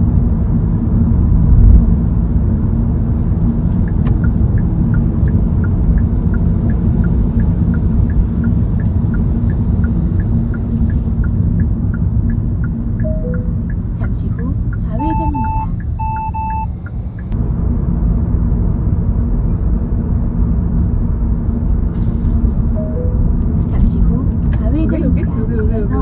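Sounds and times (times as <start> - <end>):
car road and engine rumble: 0.0 - 26.0
turn signal ticking: 2.8 - 17.4, 22.8 - 26.0.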